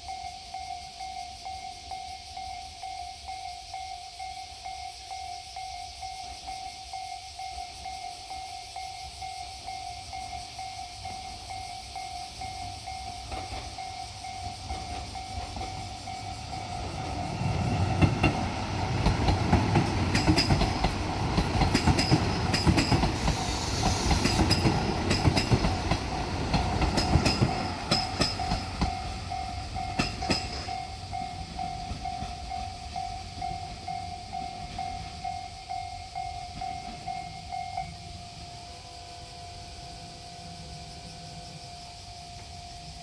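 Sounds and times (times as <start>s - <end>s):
train rumble: 5.0s - 43.0s
level crossing alarm ringing: 6.4s - 41.4s
wheels clacking over rail joints: 12.5s - 38.0s.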